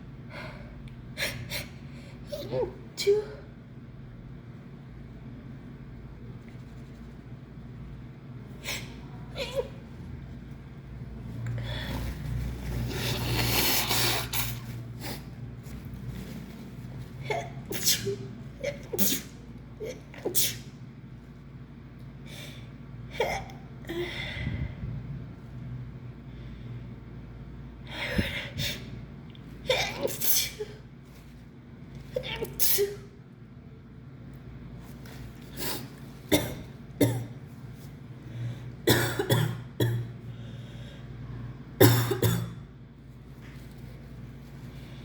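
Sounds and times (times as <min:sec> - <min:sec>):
woman sneezing: 0:17.2 - 0:20.7, 0:29.6 - 0:30.8, 0:32.2 - 0:33.1
woman coughing: 0:29.7 - 0:30.8, 0:36.3 - 0:37.4, 0:38.8 - 0:40.1, 0:41.8 - 0:42.7.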